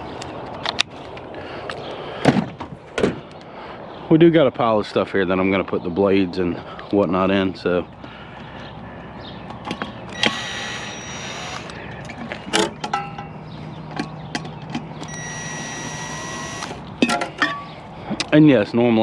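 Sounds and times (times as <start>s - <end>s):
cordless drill running: 10.1s - 11.8s, 15.0s - 16.9s.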